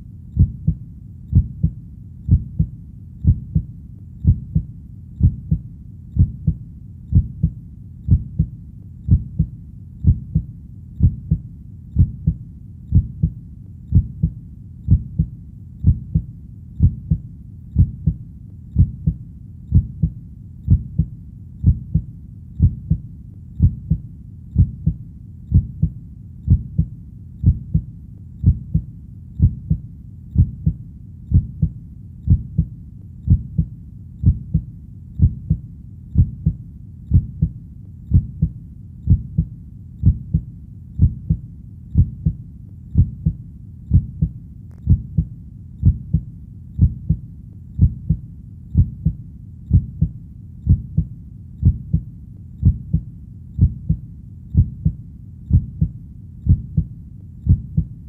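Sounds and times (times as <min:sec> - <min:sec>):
heartbeat double thump: 0:00.4 - 0:05.6, 0:06.2 - 0:08.5, 0:09.1 - 0:11.4, 0:12.0 - 0:17.2, 0:17.8 - 0:18.2, 0:18.8 - 0:23.0, 0:23.6 - 0:24.0, 0:24.6 - 0:29.8, 0:30.4 - 0:32.7, 0:33.3 - 0:35.6, 0:36.2 - 0:41.4, 0:42.0 - 0:42.4, 0:43.0 - 0:47.2, 0:47.8 - 0:48.2, 0:48.8 - 0:54.0, 0:54.6 - 0:55.9, 0:56.5 - 0:56.9, 0:57.5 - 0:57.9.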